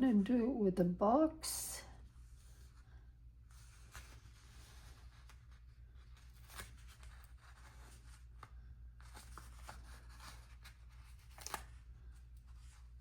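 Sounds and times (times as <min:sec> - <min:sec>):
paper rustling: 0:03.5 - 0:13.0.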